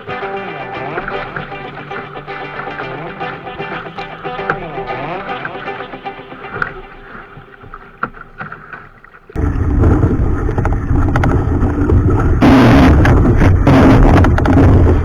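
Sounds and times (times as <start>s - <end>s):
faint music: 0.0s - 8.3s
rushing water: 0.0s - 15.0s
wind buffeting microphone: 9.4s - 15.0s.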